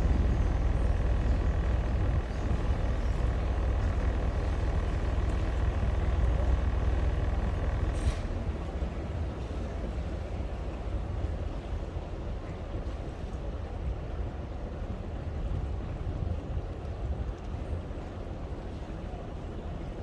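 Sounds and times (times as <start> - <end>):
boat engine droning: 0.0 - 12.4.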